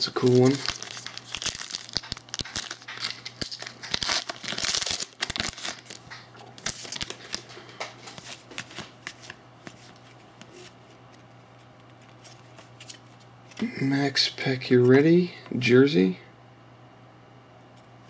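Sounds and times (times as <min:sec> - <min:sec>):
foil wrapper crinkling: 0:00.1 - 0:13.6
cards rustling and clicking: 0:00.2 - 0:13.7.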